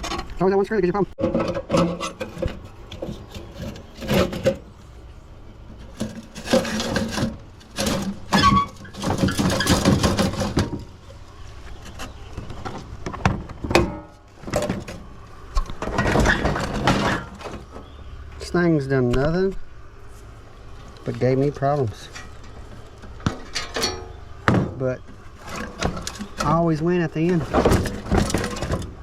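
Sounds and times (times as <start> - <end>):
plastic parts clattering and scraping: 1.2 - 4.8, 5.7 - 17.8, 21.8 - 29.0.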